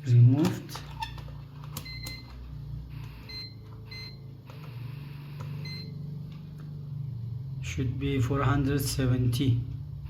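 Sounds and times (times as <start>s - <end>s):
steady low hum: 0.0s - 10.0s
meter beeping: 0.5s - 6.1s.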